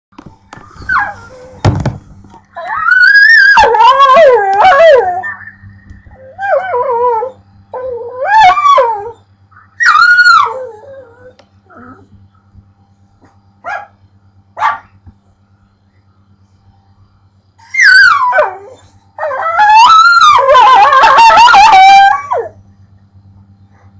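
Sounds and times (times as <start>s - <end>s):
dog howling and whining: 0.7s - 1.6s, 2.6s - 12.1s, 17.6s - 22.6s.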